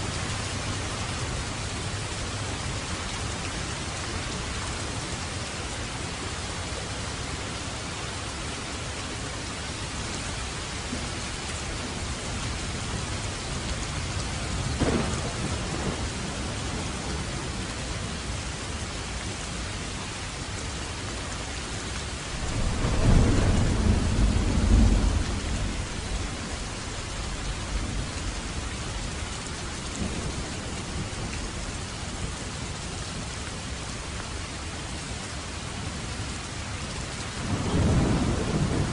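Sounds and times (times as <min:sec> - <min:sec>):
steady rain: 0:00.0 - 0:38.9
thunder rumble: 0:12.7 - 0:17.7, 0:22.3 - 0:28.6, 0:37.3 - 0:38.9
thunder crack: 0:14.8 - 0:16.1.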